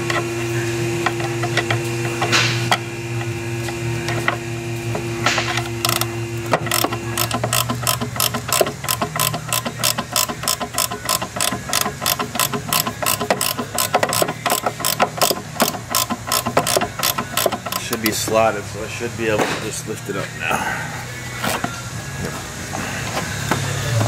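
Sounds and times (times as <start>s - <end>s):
steady background hum: 0.0s - 24.0s
ratchet wrench clicking: 5.4s - 18.2s.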